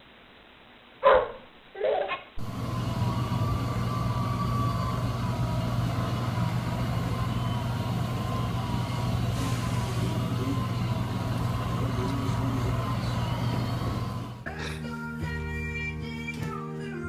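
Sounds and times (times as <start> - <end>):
dog barking: 1.0 - 2.2
thin wavering whine: 2.4 - 14.4
steady low hum: 2.4 - 14.5.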